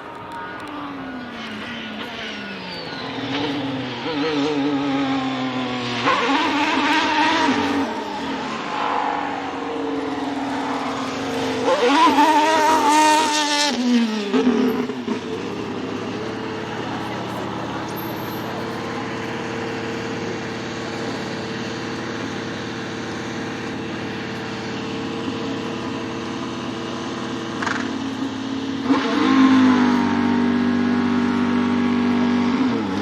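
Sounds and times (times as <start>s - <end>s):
racing car engine accelerating: 0.0s - 33.0s.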